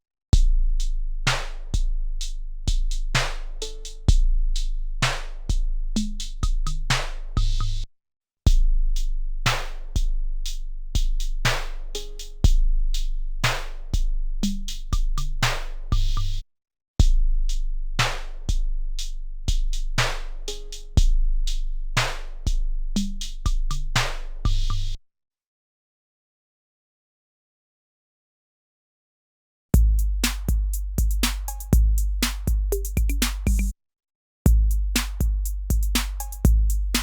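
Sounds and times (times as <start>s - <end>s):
sampled drum beat: 0.4s - 7.8s, 18.0s - 25.0s, 29.8s - 33.7s, 34.5s - 37.0s.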